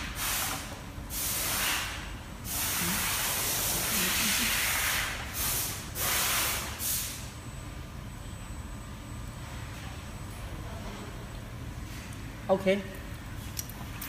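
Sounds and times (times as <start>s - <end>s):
compressed air hissing: 0.0s - 7.3s.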